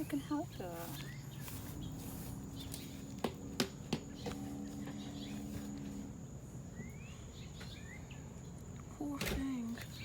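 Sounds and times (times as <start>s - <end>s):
rising bird chirp: 0.0s - 3.2s, 4.1s - 8.6s
low steady hum: 0.0s - 10.0s
high insect-like buzz: 1.4s - 7.0s.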